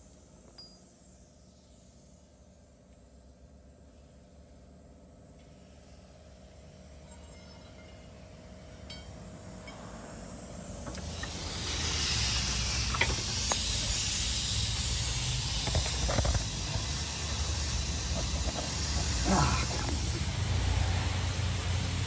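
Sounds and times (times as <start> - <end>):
steady hiss: 9.0 - 22.0.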